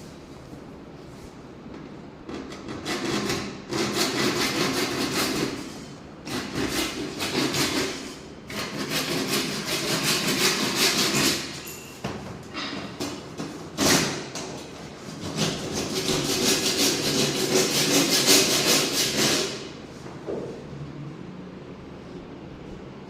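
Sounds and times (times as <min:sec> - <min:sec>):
hand scraping wood: 0:13.4 - 0:19.8.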